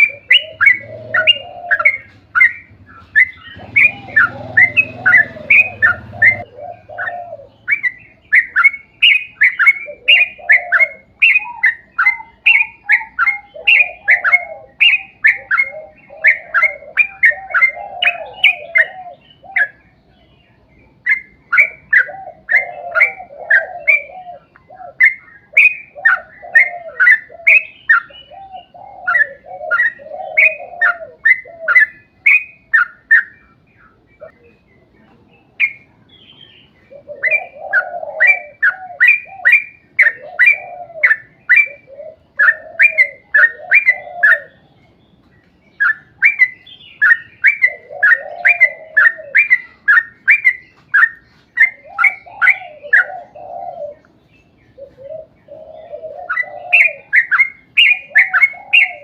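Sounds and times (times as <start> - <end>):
bulbul singing bubbly phrases: 0.0 - 19.0.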